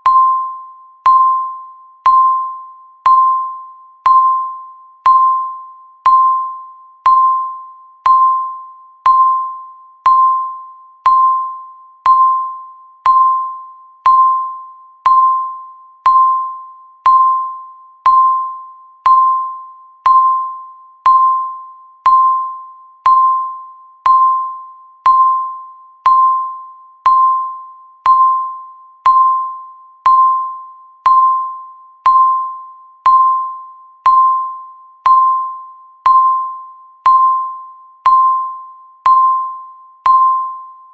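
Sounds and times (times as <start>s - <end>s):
countdown timer beeping: 0.0s - 40.9s.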